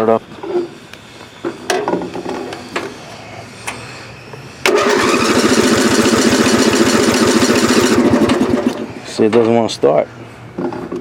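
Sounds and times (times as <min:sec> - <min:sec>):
engine cranking without starting: 0:04.6 - 0:08.9.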